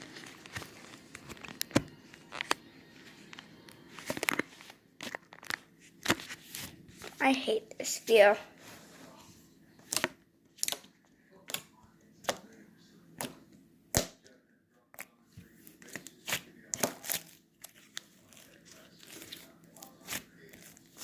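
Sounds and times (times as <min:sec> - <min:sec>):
slime popping and crackling: 0:15.8 - 0:21.0.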